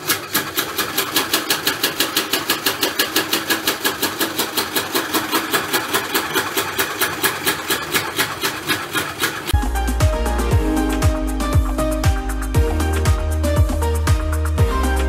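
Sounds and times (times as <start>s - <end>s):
washing machine running hum: 0.0s - 10.7s.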